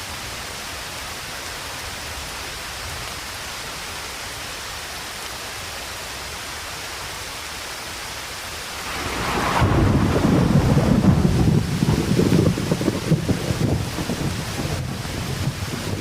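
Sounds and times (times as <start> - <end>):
rain hiss: 0.0 - 16.0
thunder rumbling: 8.9 - 16.0.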